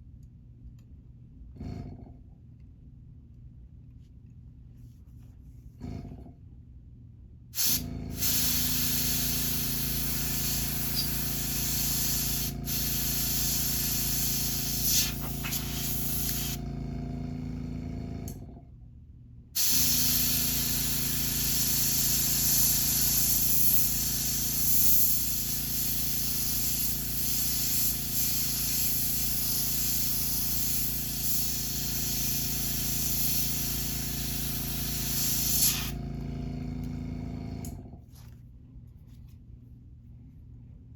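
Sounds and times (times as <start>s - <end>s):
airbrush spraying hiss: 7.6s - 16.6s, 19.6s - 36.0s
compressor motor hum: 7.6s - 18.8s, 19.6s - 38.0s.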